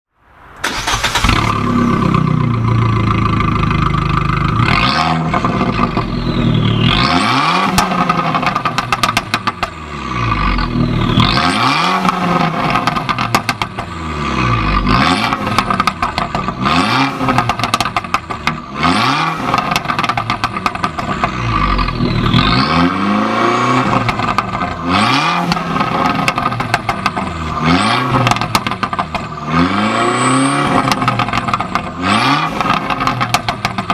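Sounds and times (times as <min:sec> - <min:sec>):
car engine revving: 0:00.6 - 0:33.9
exhaust pops and bangs: 0:06.8 - 0:09.9, 0:11.2 - 0:14.2, 0:14.8 - 0:22.6, 0:23.8 - 0:29.8, 0:30.7 - 0:33.9.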